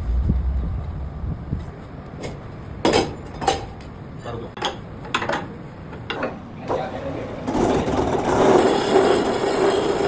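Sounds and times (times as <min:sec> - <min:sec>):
low rumble: 0:00.0 - 0:01.7.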